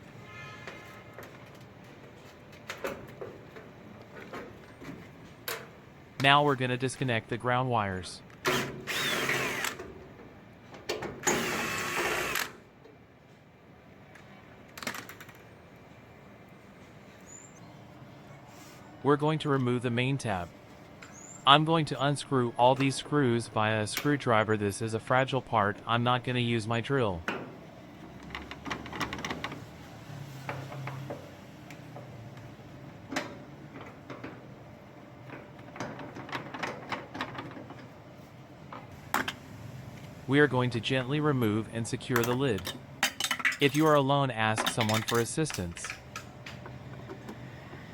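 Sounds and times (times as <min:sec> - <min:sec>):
cordless drill whirring: 0:08.5 - 0:09.8, 0:11.3 - 0:12.5.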